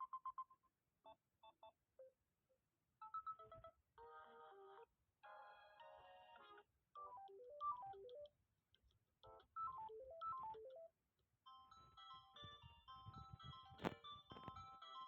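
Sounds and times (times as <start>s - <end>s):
electronic ringtone melody: 11.5s - 15.0s.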